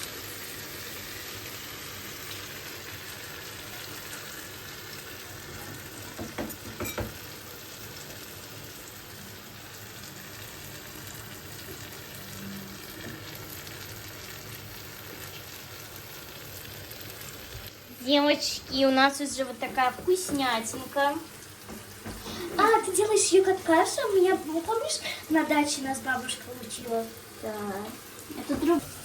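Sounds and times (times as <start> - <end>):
tomatoes sizzling in a pan: 0.0 - 29.0
utensil knocking against pan: 6.1 - 7.2, 19.5 - 21.0.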